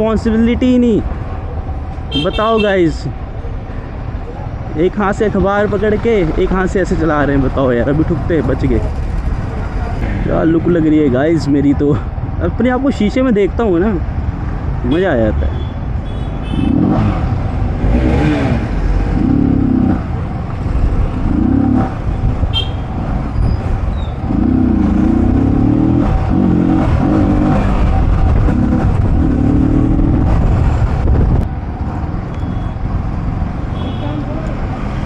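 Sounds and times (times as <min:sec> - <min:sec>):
motorcycle engine revving: 0:16.4 - 0:31.1.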